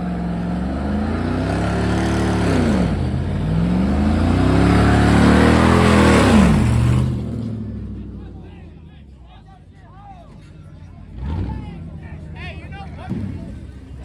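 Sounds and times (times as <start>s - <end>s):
truck engine revving: 0.0s - 8.5s, 10.4s - 14.0s.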